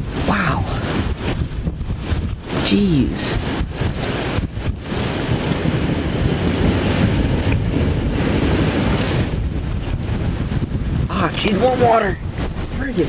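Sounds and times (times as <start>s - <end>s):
wind gusts buffeting microphone: 0.0s - 13.0s.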